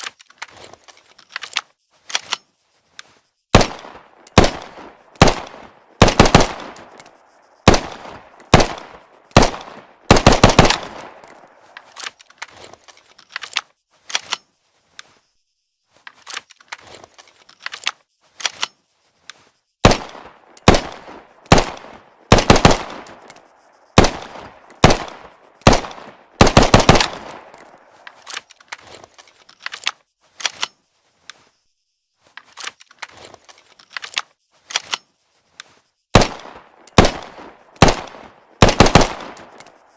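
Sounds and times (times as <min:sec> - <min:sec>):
pistol gunshots: 0:03.5 - 0:06.9, 0:07.6 - 0:11.2, 0:19.8 - 0:23.2, 0:24.0 - 0:27.6, 0:36.1 - 0:39.7.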